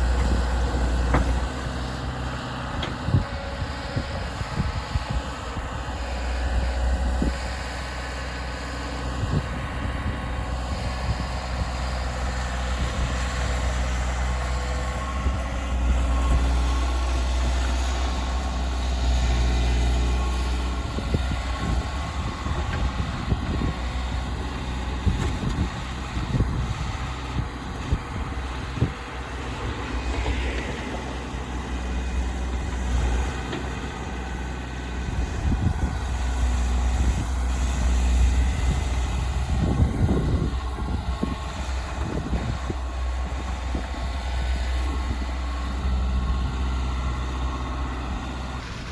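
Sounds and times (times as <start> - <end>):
excavator diesel engine droning: 0.0 - 48.9.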